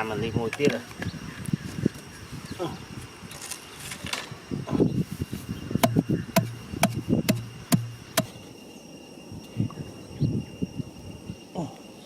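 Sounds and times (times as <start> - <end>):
sharp knocks with dull thuds: 5.8 - 8.4
soft thumps: 5.8 - 8.4.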